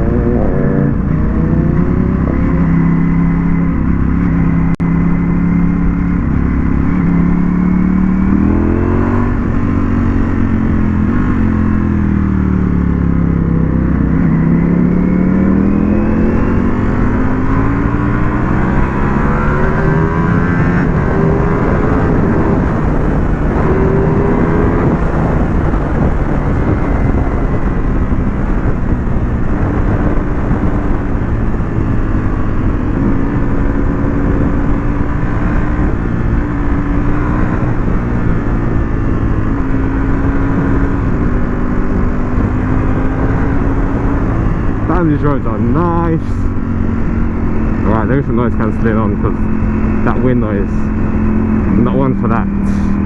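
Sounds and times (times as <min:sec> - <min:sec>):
motorcycle engine revving: 0:00.0 - 0:53.0
wind on microphone: 0:00.0 - 0:53.0.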